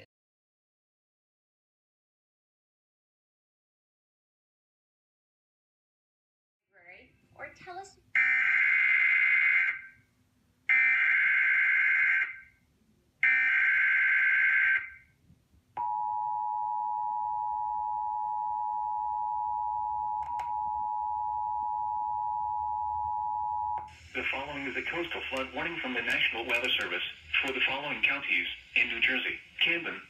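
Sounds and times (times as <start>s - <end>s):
harsh modem warble bursts: 23.9s - 30.0s.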